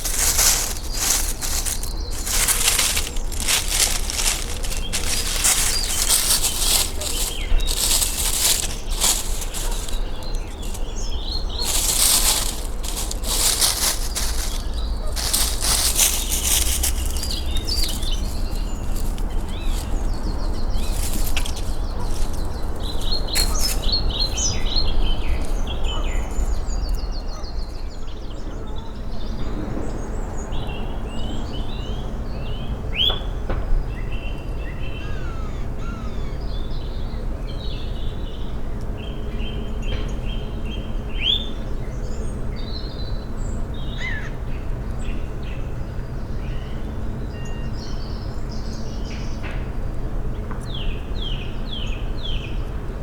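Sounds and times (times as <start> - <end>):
birds singing and chirping: 0.0 - 29.4.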